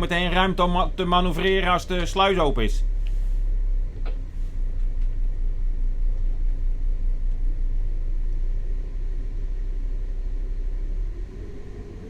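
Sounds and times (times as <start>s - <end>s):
boat diesel engine rumbling: 0.0s - 12.0s.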